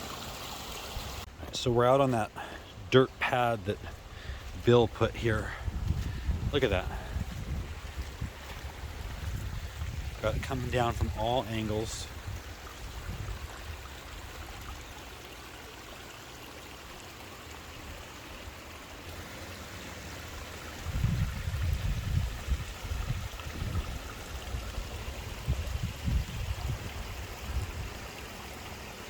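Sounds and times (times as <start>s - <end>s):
storm runoff rushing: 0.0s - 29.0s
low rumbles on microphone: 4.6s - 11.2s.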